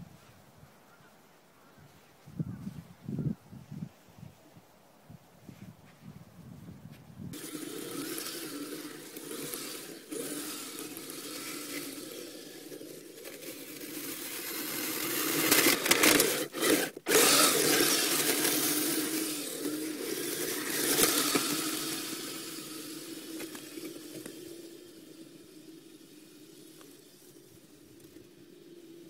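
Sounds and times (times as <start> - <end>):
plastic tracks scraping and rattling: 7.3 - 28.6
toy vehicle motor whine: 7.3 - 29.0.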